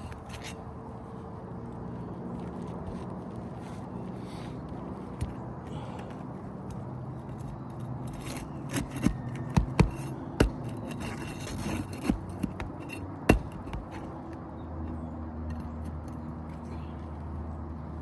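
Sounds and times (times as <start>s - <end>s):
hand tool pulling roofing nails: 6.7s - 14.2s.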